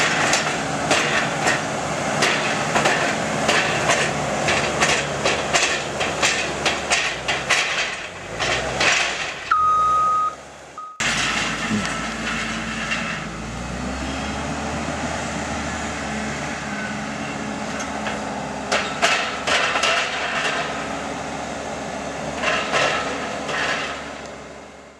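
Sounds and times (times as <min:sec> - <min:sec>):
diesel machinery running: 0:00.0 - 0:24.9
steady beep: 0:09.5 - 0:11.0.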